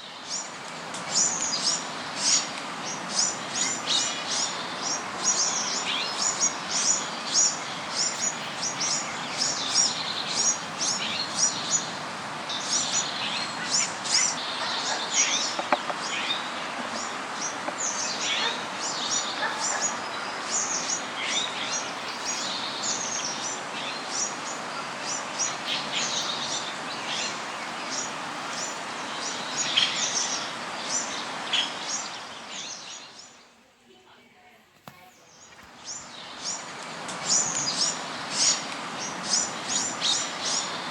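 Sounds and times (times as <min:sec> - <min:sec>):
small birds chirping: 0:00.0 - 0:33.8
steady background hiss: 0:00.0 - 0:40.9.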